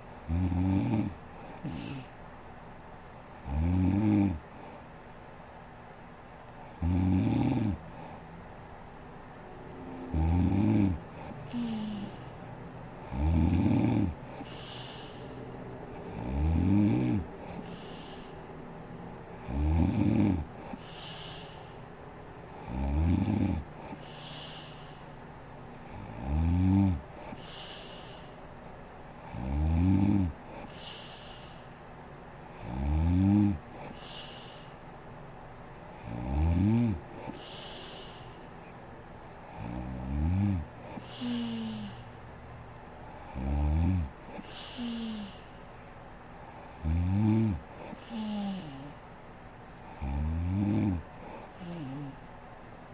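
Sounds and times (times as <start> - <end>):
woman snoring: 0.3 - 2.1, 3.5 - 4.4, 6.8 - 7.8, 9.8 - 15.4, 16.0 - 18.5, 19.4 - 21.8, 22.6 - 25.1, 25.9 - 28.4, 29.3 - 31.7, 32.6 - 34.7, 36.0 - 38.4, 39.6 - 42.2, 43.3 - 45.8, 46.8 - 49.1, 49.9 - 52.3.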